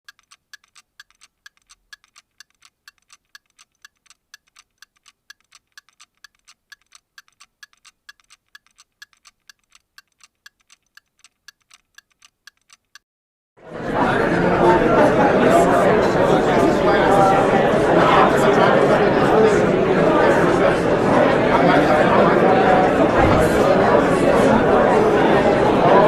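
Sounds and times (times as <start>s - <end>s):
faint clock tick-tock: 0.1s - 13.0s.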